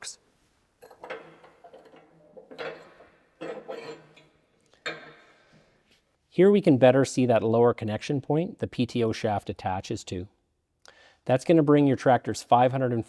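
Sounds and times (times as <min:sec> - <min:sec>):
metal guard rattling and scraping: 0:00.8 - 0:05.5.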